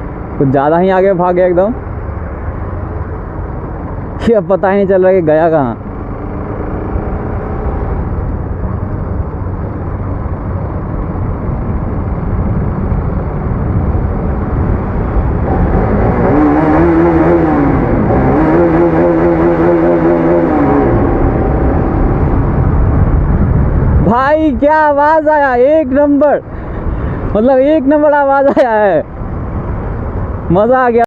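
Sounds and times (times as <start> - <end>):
wind noise on microphone: 6.2 - 27.4
motorcycle engine revving: 14.0 - 23.9.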